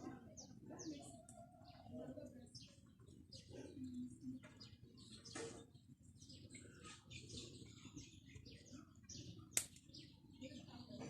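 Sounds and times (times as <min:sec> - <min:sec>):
small birds chirping: 0:00.0 - 0:11.0.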